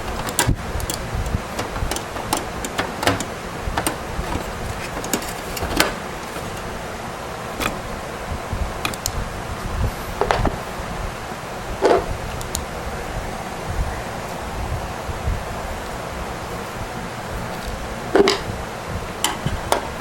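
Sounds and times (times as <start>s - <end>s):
computer case parts clicking: 0.0s - 6.8s, 7.4s - 8.0s, 8.8s - 9.2s, 19.2s - 20.0s.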